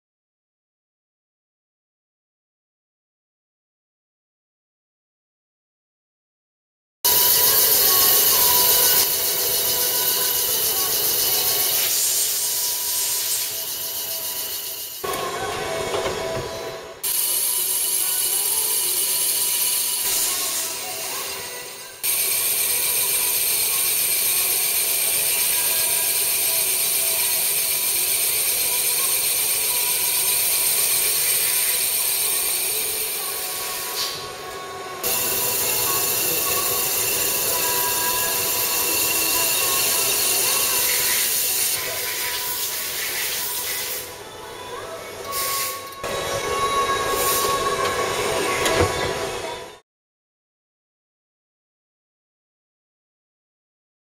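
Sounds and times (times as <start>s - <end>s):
machine cutting metal hissing: 7.1s - 15.4s, 16.3s - 44.4s, 45.2s - 49.3s
machine humming: 7.1s - 33.8s, 35.0s - 42.6s.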